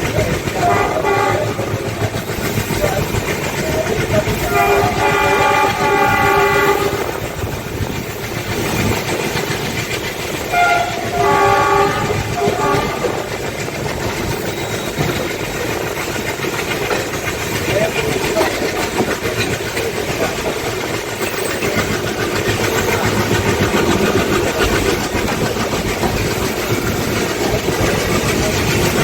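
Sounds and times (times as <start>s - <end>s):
train running noise: 0.0s - 29.0s
diesel locomotive horn: 0.5s - 1.9s, 3.8s - 7.2s, 10.4s - 13.4s.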